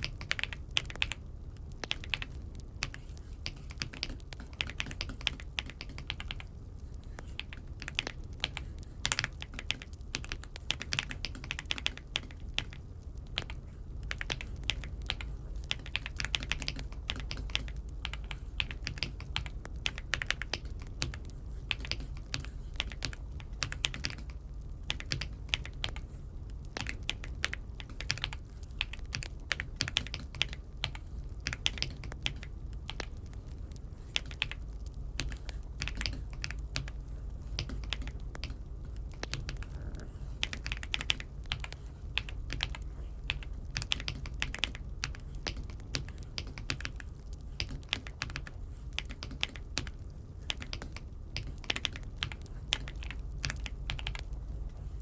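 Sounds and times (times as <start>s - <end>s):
mechanical keyboard typing: 0.0s - 1.2s, 1.8s - 6.5s, 7.2s - 26.0s, 26.7s - 33.5s, 34.1s - 54.4s
steady low hum: 0.0s - 55.0s.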